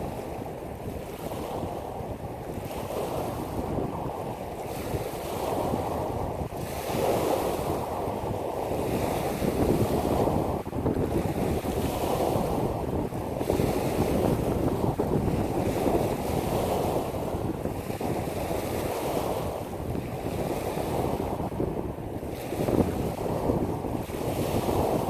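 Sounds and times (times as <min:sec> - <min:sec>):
waves washing over pebbles: 0:00.0 - 0:25.0
wind rumbling on microphone: 0:00.0 - 0:25.0.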